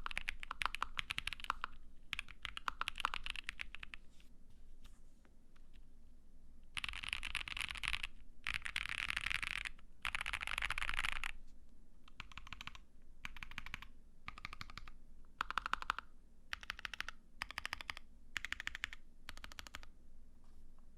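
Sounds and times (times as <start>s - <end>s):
mechanical keyboard typing: 0.0s - 4.0s, 6.8s - 11.4s, 12.1s - 19.9s.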